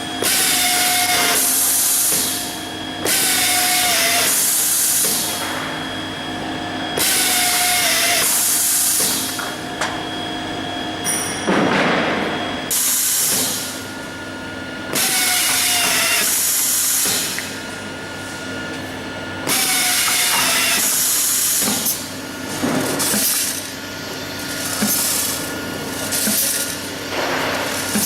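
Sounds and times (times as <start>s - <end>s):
steady machine hum: 0.0s - 28.0s
machine hissing bursts: 12.7s - 13.8s, 19.5s - 22.1s.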